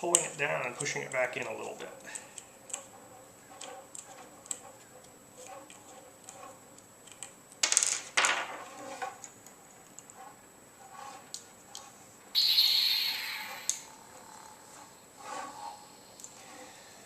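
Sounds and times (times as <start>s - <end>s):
metal hilt scraping: 12.4s - 16.9s.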